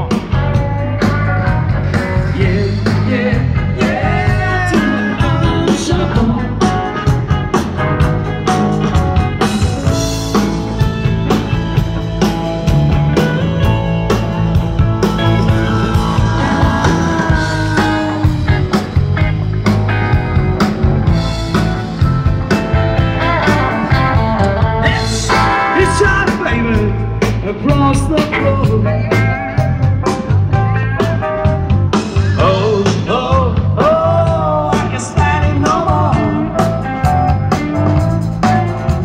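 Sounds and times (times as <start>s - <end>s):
bass guitar: 0.0s - 39.0s
electric guitar: 0.0s - 39.0s
person singing: 0.1s - 7.1s, 15.0s - 18.8s, 24.8s - 29.2s, 32.2s - 36.8s.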